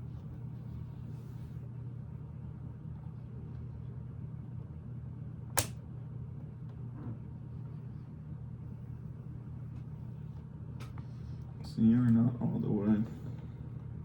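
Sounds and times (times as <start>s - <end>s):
steady low hum: 0.0s - 14.0s
plastic pieces snapping together: 5.6s - 5.8s.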